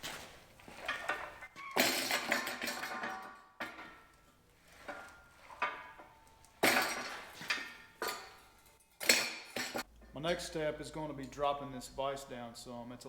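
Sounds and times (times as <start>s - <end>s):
steel parts clanking: 0.7s - 9.9s.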